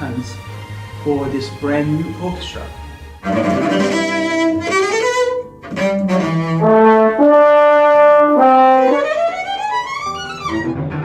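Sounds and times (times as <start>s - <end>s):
brass instrument playing: 3.2s - 9.8s.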